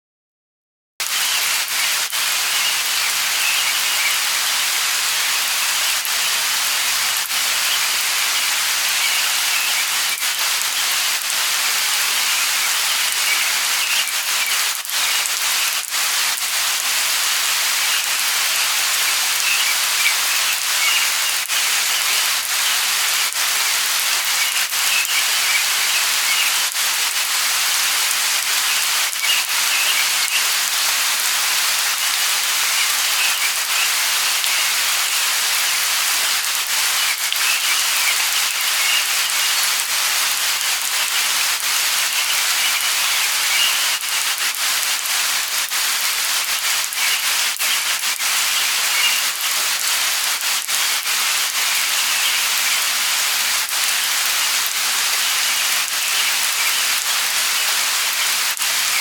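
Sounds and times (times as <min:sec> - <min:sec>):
bird chirps: 0:01.0 - 0:11.1, 0:12.0 - 0:15.8, 0:17.7 - 0:26.7, 0:28.4 - 0:30.6, 0:32.1 - 0:35.9, 0:36.8 - 0:39.8, 0:41.8 - 0:44.2, 0:46.8 - 0:49.5, 0:51.7 - 0:52.8, 0:55.1 - 0:57.0
light rain hissing: 0:01.0 - 0:59.0.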